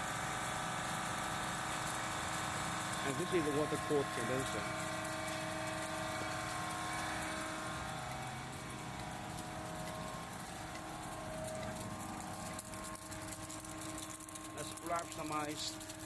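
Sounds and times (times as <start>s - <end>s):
ice machine humming: 0.0s - 16.0s.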